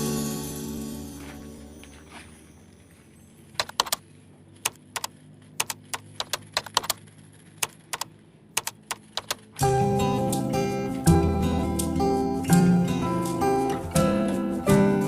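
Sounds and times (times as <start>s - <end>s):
background music: 0.0s - 2.3s, 9.2s - 15.0s
sharp irregular clicks: 3.6s - 4.0s, 4.6s - 9.4s.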